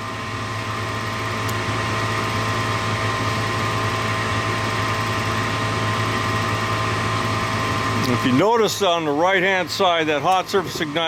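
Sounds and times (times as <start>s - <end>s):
furnace inducer motor humming: 0.0s - 11.0s.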